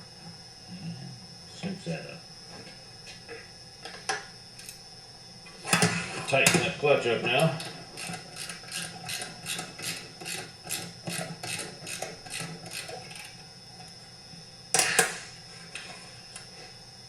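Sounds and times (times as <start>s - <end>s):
ratchet wrench clicking: 8.0s - 13.3s.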